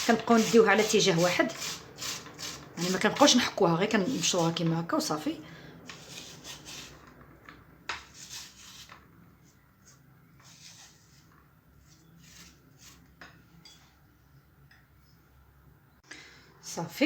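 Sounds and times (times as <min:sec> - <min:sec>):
apple rasping on hand grater: 0:00.0 - 0:03.4, 0:04.0 - 0:04.6, 0:05.9 - 0:07.0, 0:08.1 - 0:09.0.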